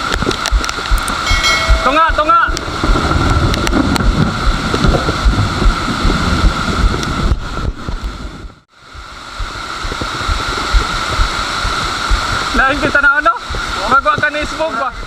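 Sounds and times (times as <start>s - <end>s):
rushing water: 0.0s - 15.0s
wind buffeting microphone: 0.0s - 15.0s.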